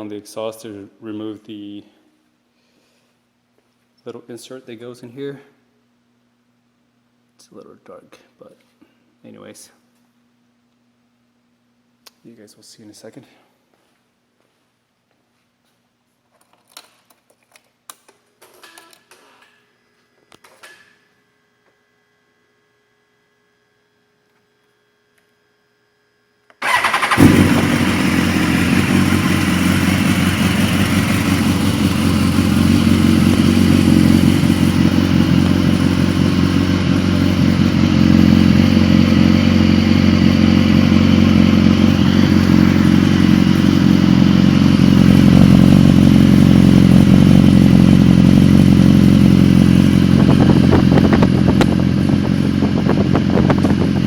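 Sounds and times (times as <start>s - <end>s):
motorcycle engine idling: 26.6s - 54.0s.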